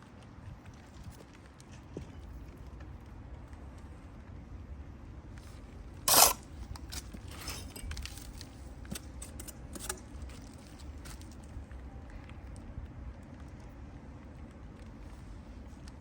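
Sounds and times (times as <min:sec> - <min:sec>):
scraping: 0:06.1 - 0:08.4.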